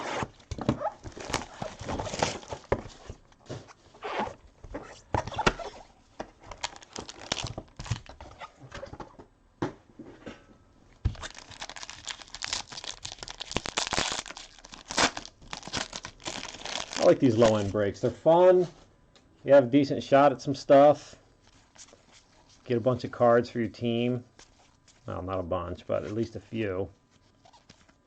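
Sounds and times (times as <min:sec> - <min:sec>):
plastic wrapping crinkling and tearing: 0:00.3 - 0:03.3, 0:06.5 - 0:08.2, 0:11.1 - 0:17.8, 0:21.4 - 0:22.7, 0:27.0 - 0:28.0.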